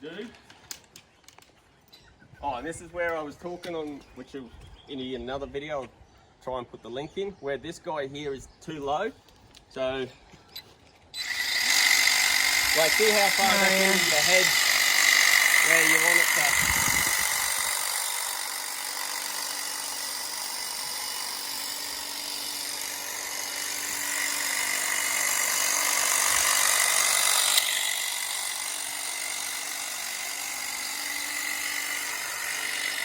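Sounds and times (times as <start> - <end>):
hedge trimmer buzzing: 11.2 - 33.0.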